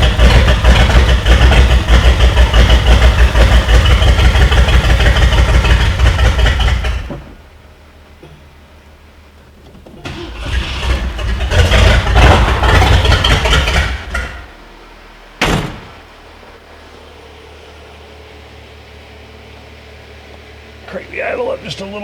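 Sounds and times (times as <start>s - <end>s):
car engine revving and idling: 0.0s - 8.1s, 8.9s - 22.0s
sharp bang: 15.4s - 16.1s.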